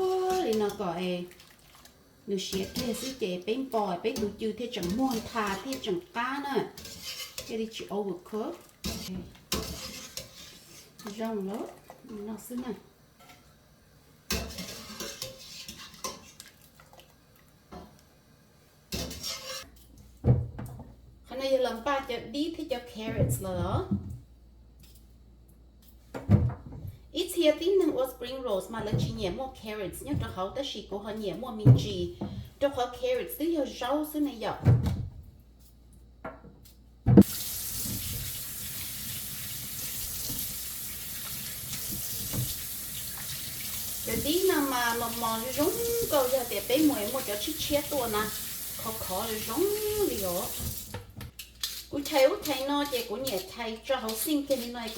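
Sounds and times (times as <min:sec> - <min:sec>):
metal utensil scraping a pan: 0:00.0 - 0:00.8, 0:02.5 - 0:03.2, 0:04.1 - 0:06.0, 0:06.6 - 0:07.6, 0:08.8 - 0:11.2, 0:14.3 - 0:16.4, 0:18.9 - 0:19.8, 0:51.4 - 0:54.9
tap water running into sink: 0:37.2 - 0:51.3.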